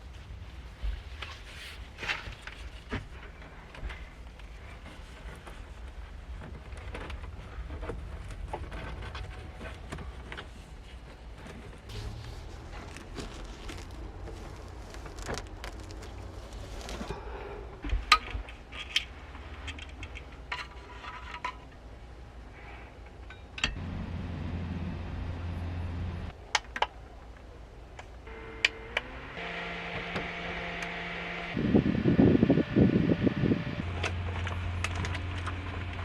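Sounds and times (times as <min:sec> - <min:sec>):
steady low hum: 0:27.9 - 0:36.0
small fan or motor tone: 0:28.3 - 0:36.0.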